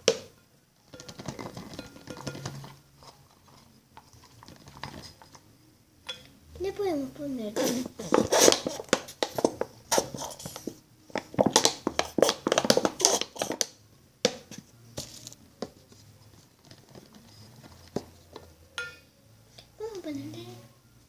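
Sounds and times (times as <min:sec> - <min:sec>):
slime materials crinkling by hand: 0:07.6 - 0:13.8.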